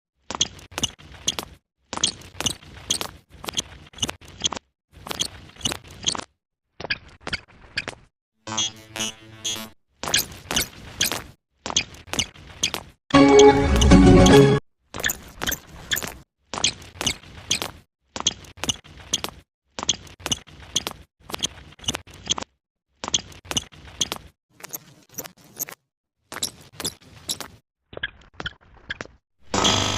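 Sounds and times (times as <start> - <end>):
cartoon clicks and squeaks: 0.4 - 17.8.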